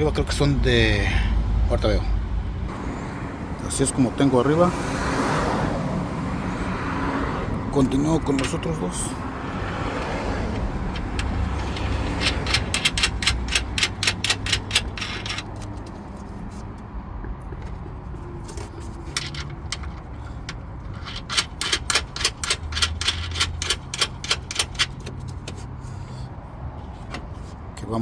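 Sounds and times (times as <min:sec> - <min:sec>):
hand ratchet clicking: 0:10.5 - 0:15.9, 0:18.5 - 0:25.7.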